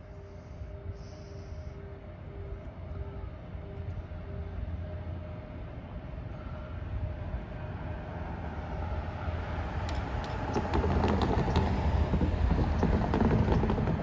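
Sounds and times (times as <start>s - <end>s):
train rumble: 0.0s - 14.0s
sharp clicks and clatter: 9.9s - 14.0s.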